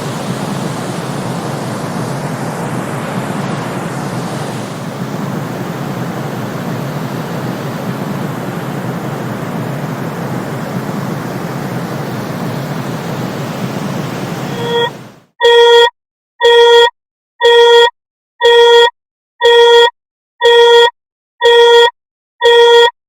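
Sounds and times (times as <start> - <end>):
white noise hiss: 0.0 - 15.3.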